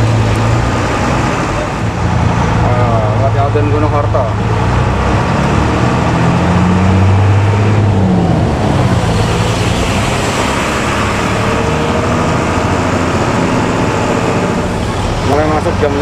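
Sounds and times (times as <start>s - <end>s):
diesel bus engine snoring exhaust: 0.0s - 15.2s
road noise: 0.0s - 16.0s.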